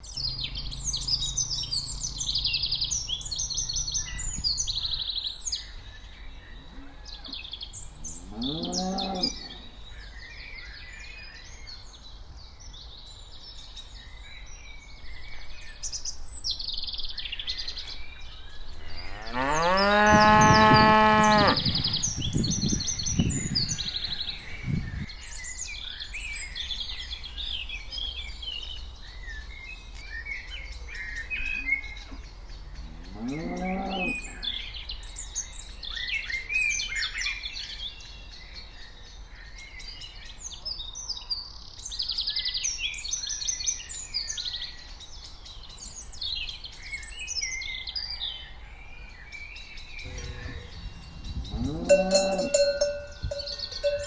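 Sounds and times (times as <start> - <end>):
songbirds chirping: 0.0 - 54.0
cattle mooing: 8.0 - 9.7, 18.8 - 22.3, 32.1 - 34.6, 50.1 - 54.0.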